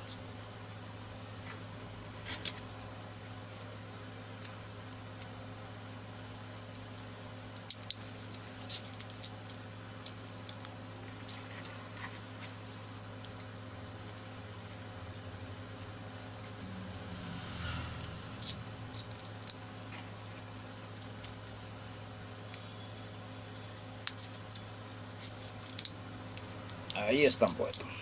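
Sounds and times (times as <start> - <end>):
steady low hum: 0.0 - 28.0
paper clicks and scratches: 6.8 - 13.6, 22.5 - 27.8.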